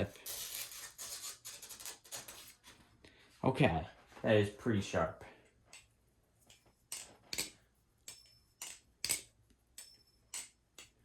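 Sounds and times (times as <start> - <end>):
balisong handles clacking: 5.7 - 11.0.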